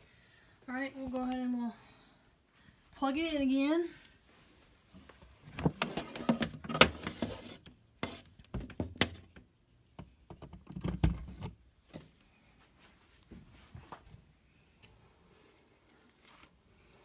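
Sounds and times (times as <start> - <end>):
rubbing and rustling: 4.2 - 9.3
power cord handling clicks and knocks: 5.5 - 7.2.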